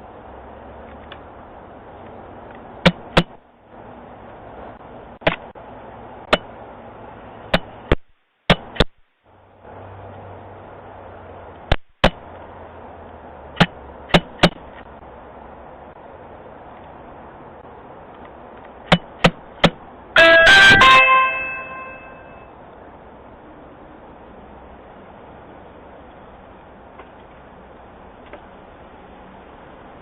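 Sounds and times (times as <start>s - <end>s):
bird beak tapping doorbell: 20.2s - 22.4s.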